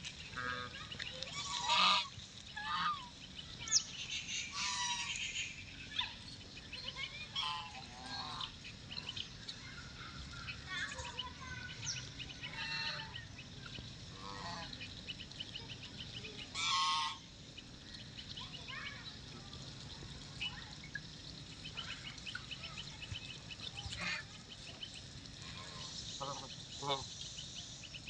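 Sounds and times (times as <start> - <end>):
duck quacking: 1.5 - 2.1, 16.6 - 17.2.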